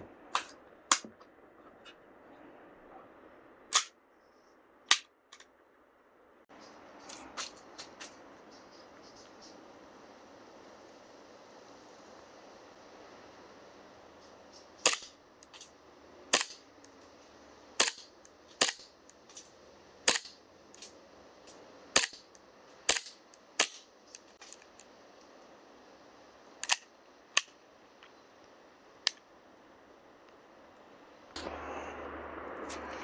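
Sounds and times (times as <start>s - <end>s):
airsoft pistol shots: 14.8s - 15.2s, 16.3s - 16.6s, 17.8s - 18.9s, 20.1s - 20.4s, 22.0s - 22.2s, 22.9s - 23.9s.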